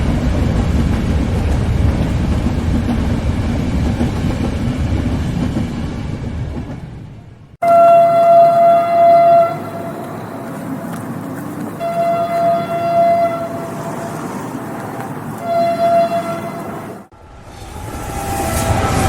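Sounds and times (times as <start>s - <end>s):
train rumbling past: 0.0s - 19.0s
train horn blasts: 7.6s - 10.1s, 11.8s - 13.6s, 15.4s - 16.8s.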